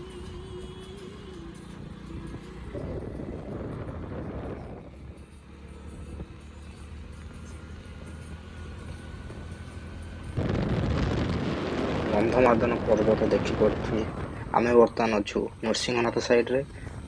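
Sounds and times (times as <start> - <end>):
road and engine rumble: 0.0 - 17.0
loud rushing noise: 10.4 - 14.8.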